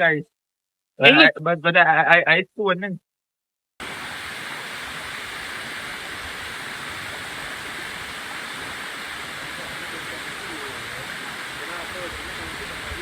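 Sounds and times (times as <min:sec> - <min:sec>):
waterfall rushing: 0:03.8 - 0:13.0.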